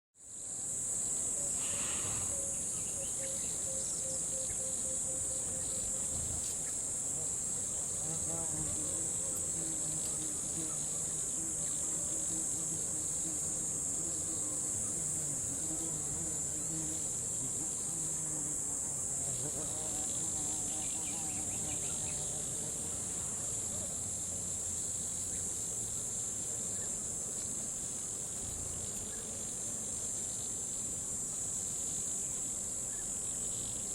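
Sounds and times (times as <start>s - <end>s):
lower wavering insect calls: 0.3s - 33.9s
high-pitched insect drone: 0.9s - 7.5s.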